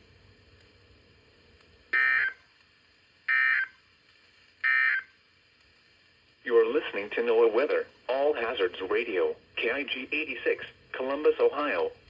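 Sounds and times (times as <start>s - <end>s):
digital data bursts: 2.0s - 2.5s.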